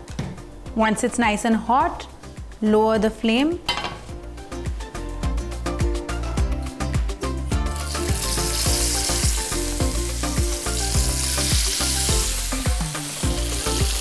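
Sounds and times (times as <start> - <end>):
background music with beat: 0.0 - 2.7, 3.5 - 14.0
food sizzling in hot oil: 7.7 - 14.0.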